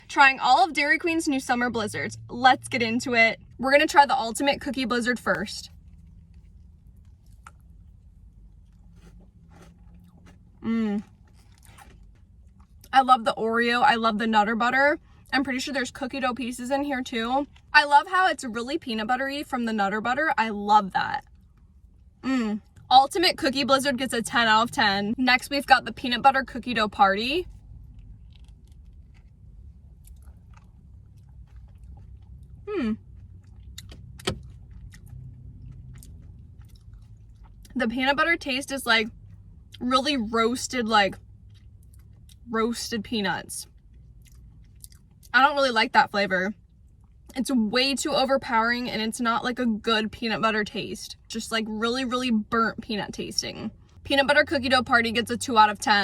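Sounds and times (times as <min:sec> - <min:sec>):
soft chewing with crunches: 0:04.3 - 0:13.0, 0:21.0 - 0:22.9, 0:27.4 - 0:40.1, 0:41.1 - 0:42.5, 0:43.6 - 0:45.4, 0:46.5 - 0:47.4
person humming: 0:32.7 - 0:33.0.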